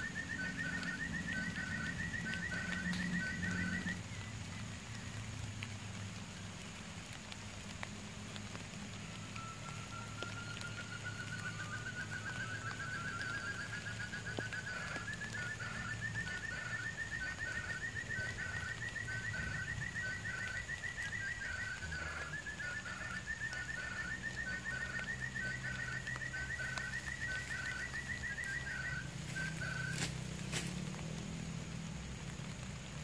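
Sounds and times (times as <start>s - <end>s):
quail trilling: 0.0s - 4.0s, 10.1s - 30.7s
lower slower bird notes: 8.4s - 31.1s.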